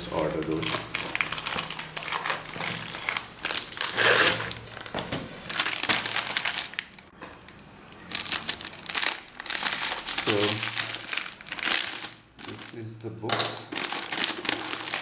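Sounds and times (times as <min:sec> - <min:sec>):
packaging crinkling and rustling: 0:00.0 - 0:15.0.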